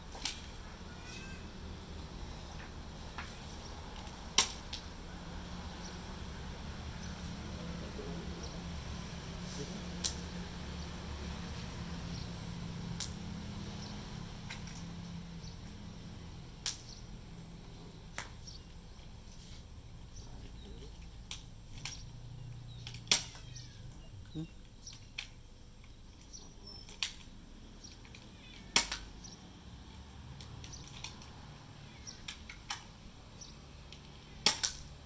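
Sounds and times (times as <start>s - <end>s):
toy dart pistol snaps: 10.0s - 10.2s, 22.9s - 23.5s, 28.7s - 29.1s, 34.4s - 34.9s.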